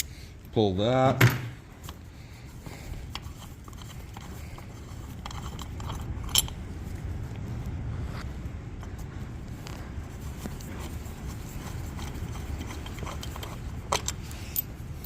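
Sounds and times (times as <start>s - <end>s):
steady low rumble: 0.0s - 15.0s
hand tools clicking on metal: 11.9s - 14.7s.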